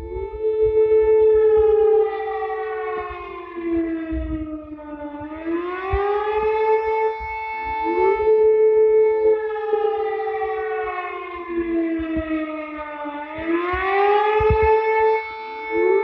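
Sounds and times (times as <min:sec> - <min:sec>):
warning siren: 0:00.0 - 0:16.0.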